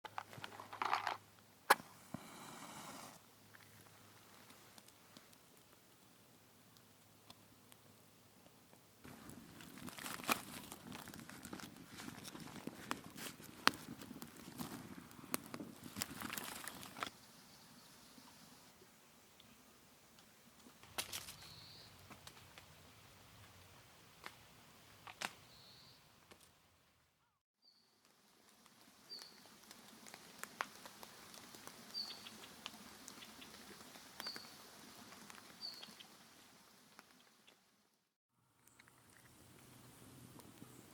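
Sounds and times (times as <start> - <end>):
campfire crackling and popping: 0.1 - 17.1, 20.2 - 23.6, 25.0 - 25.4, 28.0 - 37.7, 38.6 - 40.9
faint ticks and patters: 2.1 - 17.2, 28.0 - 37.7
small bird chirping: 21.4 - 22.0, 25.4 - 26.0, 29.1 - 29.4, 31.9 - 33.6, 34.2 - 34.6, 35.6 - 36.1.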